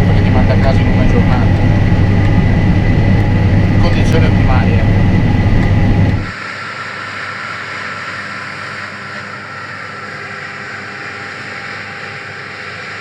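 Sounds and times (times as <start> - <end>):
combine harvester whirring: 0.0 - 13.0.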